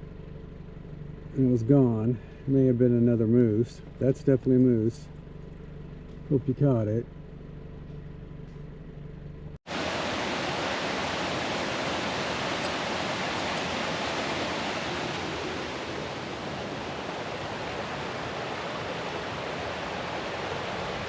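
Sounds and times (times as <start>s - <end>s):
car cabin hum: 5.9s - 21.0s
flowing water rushing: 9.7s - 21.0s.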